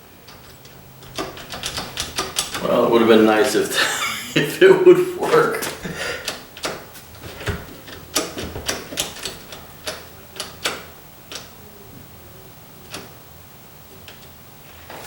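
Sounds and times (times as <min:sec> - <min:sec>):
door lock clicking: 0:00.2 - 0:02.6.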